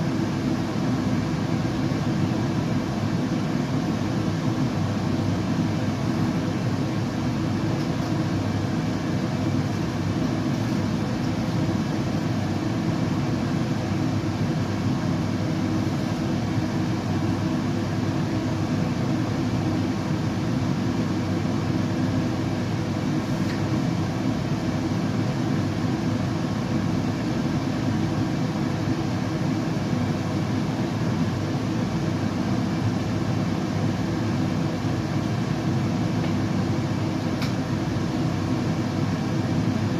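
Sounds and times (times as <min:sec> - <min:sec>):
steady white noise: 0:00.0 - 0:39.9.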